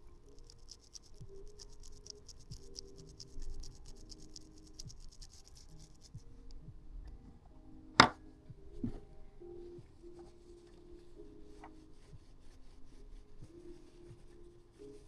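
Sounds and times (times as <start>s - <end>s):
soft knock: 8.0s - 8.2s.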